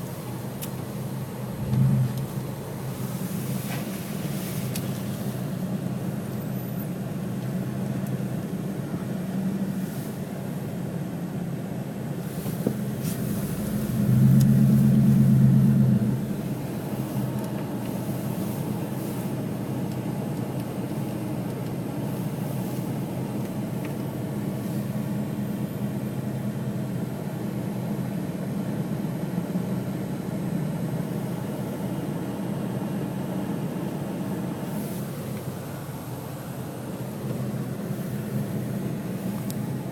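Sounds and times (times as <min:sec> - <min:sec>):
road noise: 0:00.0 - 0:39.9
motor vehicle running: 0:01.4 - 0:05.0, 0:12.4 - 0:19.3.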